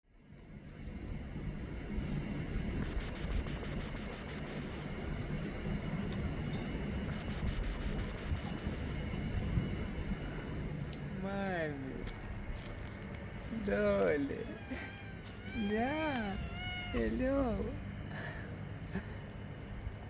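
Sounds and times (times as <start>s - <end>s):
low outdoor rumble: 0.1s - 20.0s
rapid high-pitched ticking: 2.8s - 4.9s, 7.1s - 9.0s.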